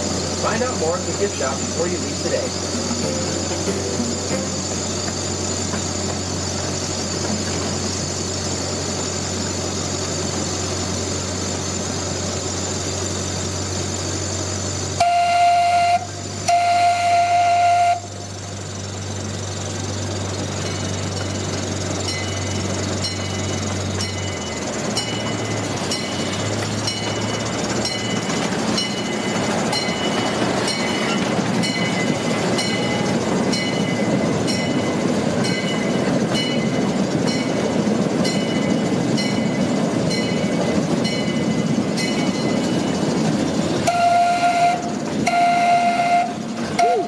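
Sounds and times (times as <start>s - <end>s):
miniature train rumbling: 0.0s - 47.0s
locomotive horn blasts: 15.0s - 18.2s, 43.8s - 47.0s.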